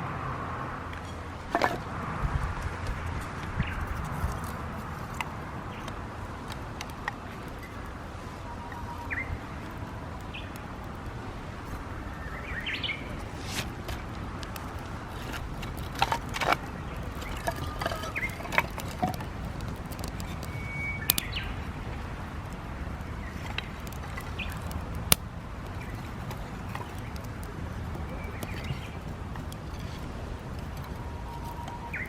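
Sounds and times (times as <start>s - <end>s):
low outdoor rumble: 0.0s - 32.0s
small birds chirping: 3.2s - 32.0s
sharp cracks: 12.8s - 29.8s.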